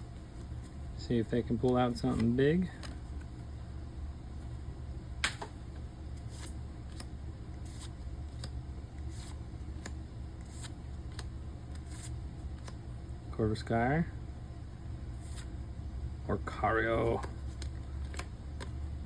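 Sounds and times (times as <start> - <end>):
trading cards slapping: 1.6 - 3.3, 5.2 - 5.6, 6.2 - 12.8, 17.1 - 18.8.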